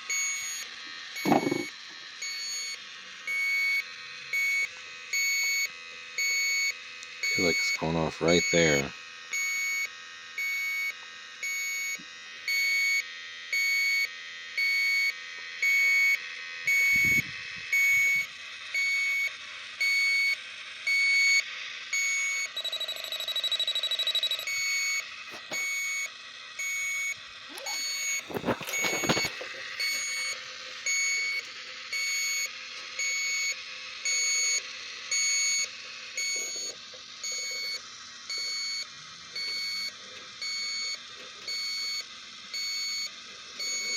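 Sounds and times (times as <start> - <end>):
leak detector beeping: 0.0 - 43.9
steady electronic tone: 1.2 - 1.7.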